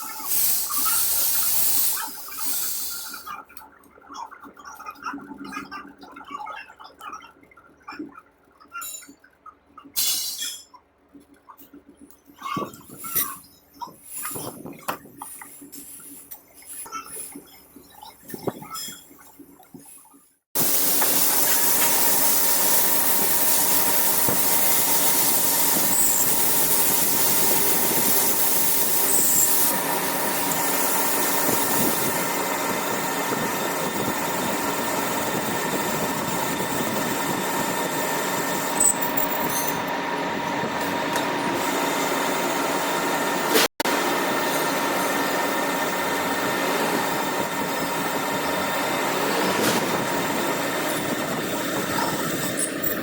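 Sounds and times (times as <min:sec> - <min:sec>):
metalworking machine whining: 0:20.6 - 0:53.0.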